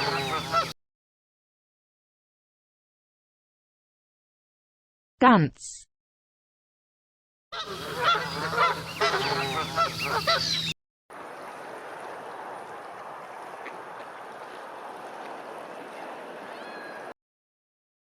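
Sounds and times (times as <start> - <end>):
geese honking: 0.0 - 0.7, 7.6 - 10.7.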